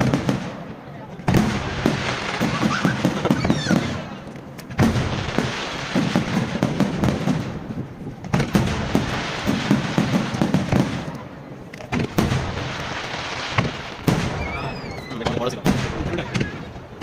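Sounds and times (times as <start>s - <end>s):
firework bangs: 0.0s - 17.0s
firework crackling: 0.0s - 17.0s
firework whistling: 1.3s - 4.2s, 12.1s - 16.7s.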